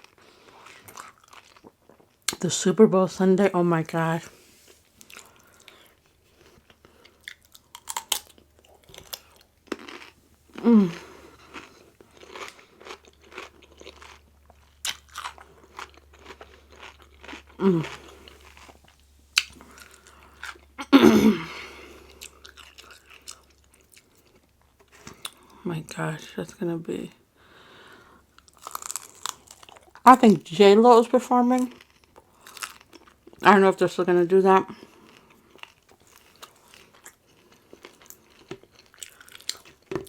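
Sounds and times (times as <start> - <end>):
chewing and crunching tacos: 0.0 - 2.4, 4.2 - 20.9, 21.5 - 25.6, 27.5 - 30.2, 31.3 - 33.6, 34.6 - 40.0
voiced mouth sounds: 10.5 - 11.3, 17.6 - 18.3.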